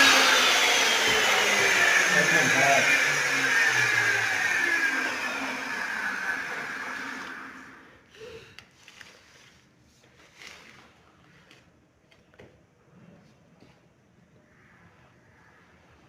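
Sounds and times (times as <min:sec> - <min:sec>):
power tool motor winding down: 0:00.0 - 0:07.9.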